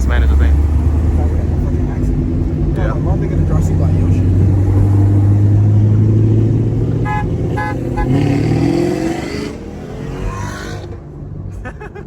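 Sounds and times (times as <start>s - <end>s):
car engine running: 0.0s - 9.0s
car horn tooting: 7.0s - 8.4s.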